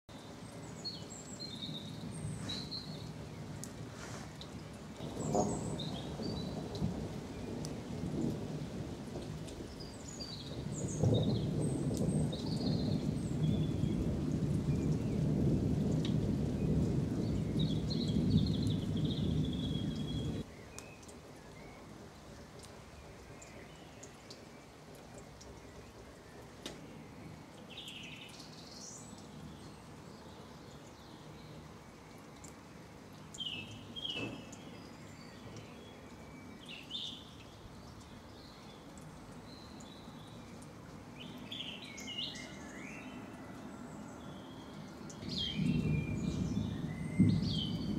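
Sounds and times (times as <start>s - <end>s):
blackbirds singing: 0.1s - 3.7s, 4.3s - 8.3s, 9.6s - 32.6s, 33.2s - 47.9s
distant thunder rumble: 1.5s - 20.5s, 44.2s - 47.9s.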